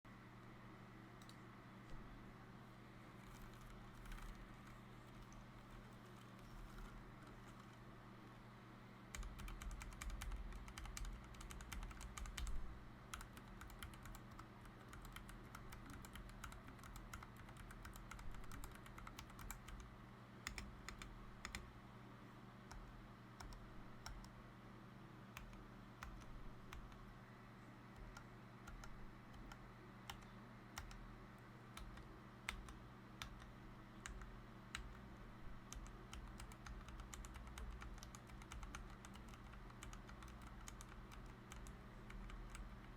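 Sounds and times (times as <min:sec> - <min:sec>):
faint steady hum: 0:00.0 - 0:42.9
mechanical keyboard typing: 0:03.3 - 0:07.8, 0:09.1 - 0:21.7, 0:22.7 - 0:24.3, 0:28.0 - 0:31.1, 0:31.8 - 0:42.9.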